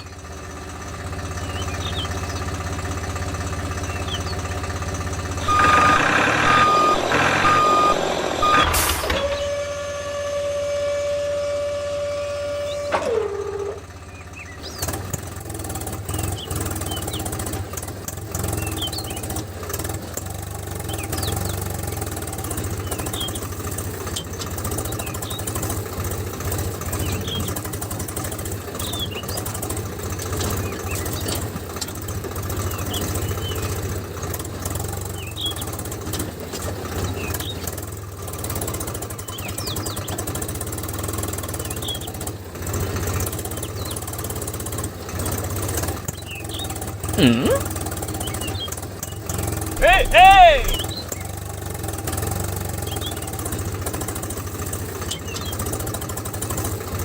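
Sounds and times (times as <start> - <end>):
motor pulsing hum: 5.4 - 12.9.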